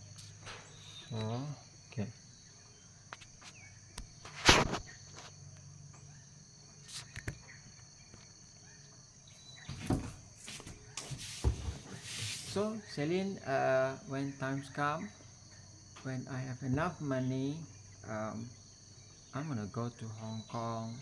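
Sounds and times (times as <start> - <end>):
crickets chirring: 0.0 - 21.0
clicks and rustles of phone: 6.9 - 8.3.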